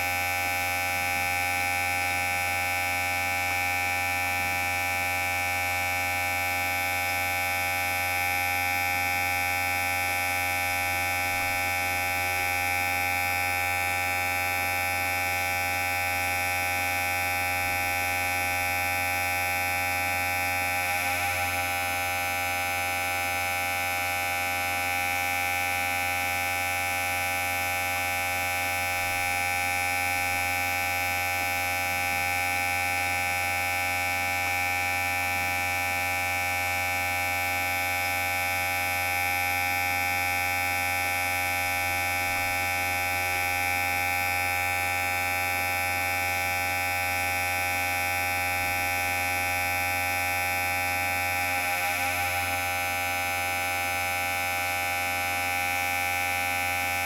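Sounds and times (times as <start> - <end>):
electric hair clipper buzzing: 8.2 - 23.2, 27.6 - 33.2, 36.2 - 53.4.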